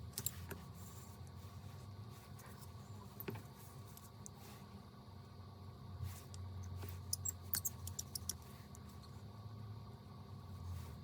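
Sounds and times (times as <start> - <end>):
low steady hum: 0.0 - 11.0
small tools clicking and tapping: 7.1 - 8.4.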